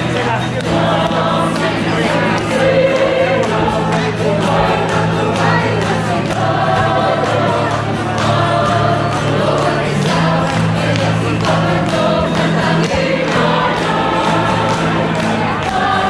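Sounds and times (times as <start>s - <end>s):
choir singing: 0.0s - 16.0s
instrumental accompaniment: 0.0s - 16.0s.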